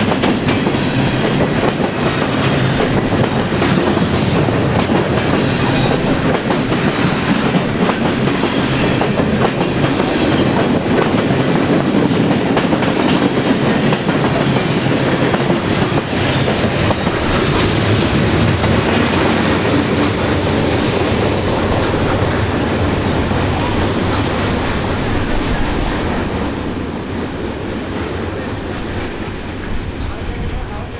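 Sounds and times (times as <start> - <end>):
train wheels clicking over rail joints: 0.0 - 30.1.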